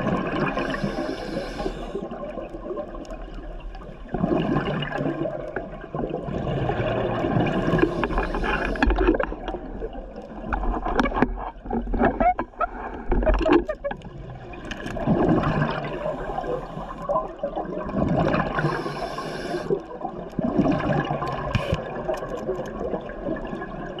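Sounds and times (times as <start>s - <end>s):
regulator inhalation hiss: 0.6s - 2.0s, 18.6s - 19.8s.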